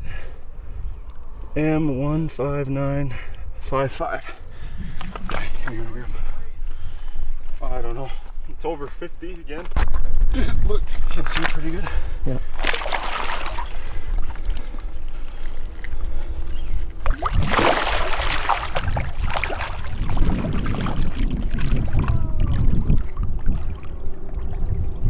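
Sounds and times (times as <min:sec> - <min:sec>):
water splashing and sloshing: 0:11.0 - 0:25.0
steady low rumble: 0:13.3 - 0:25.0.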